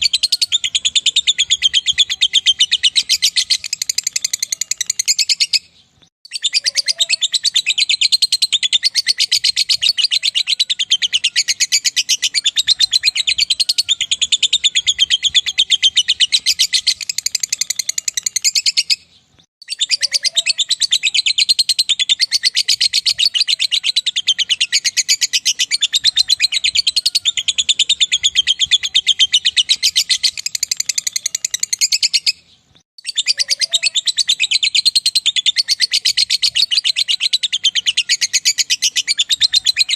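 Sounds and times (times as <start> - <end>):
bird chattering trill: 0.0 - 39.9.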